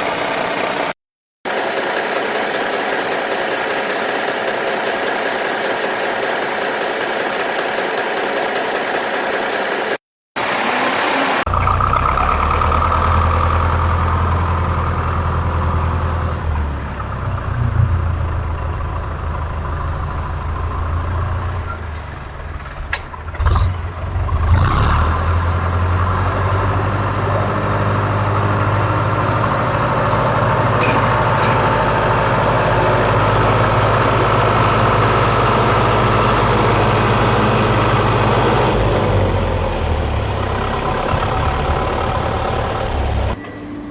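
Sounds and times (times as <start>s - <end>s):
vehicle engine idling: 11.5s - 24.4s, 25.6s - 43.9s
knocks and clanks: 30.1s - 31.9s.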